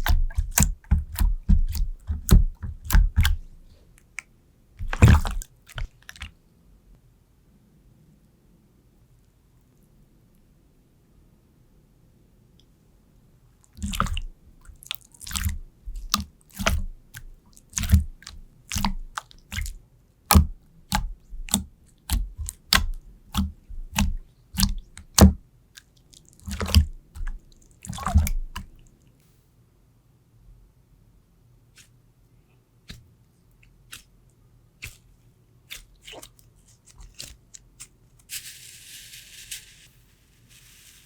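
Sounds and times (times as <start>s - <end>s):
slime clicking and popping: 0.0s - 3.4s, 15.3s - 25.4s
slime squelching: 0.0s - 4.2s, 4.8s - 6.4s, 13.7s - 29.0s, 33.7s - 34.1s, 34.8s - 38.0s.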